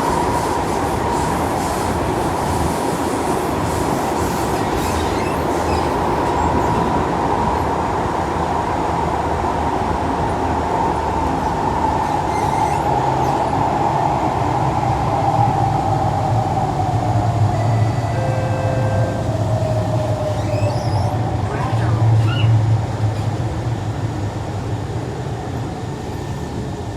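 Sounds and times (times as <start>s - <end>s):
metro train rumbling in tunnel: 0.0s - 26.9s
faint short squeals: 12.1s - 13.4s, 17.6s - 23.3s
train whine falling in pitch: 17.4s - 22.5s.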